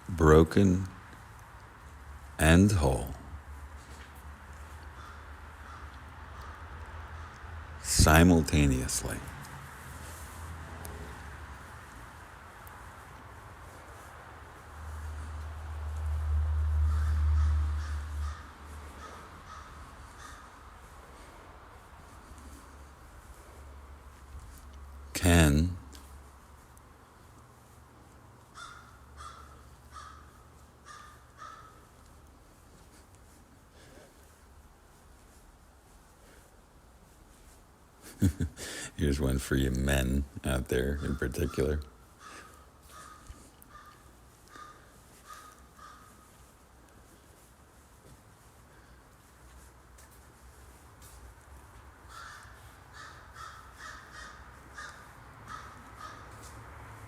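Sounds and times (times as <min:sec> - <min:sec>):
harsh bird calls: 0:16.8 - 0:21.3, 0:40.5 - 0:46.4.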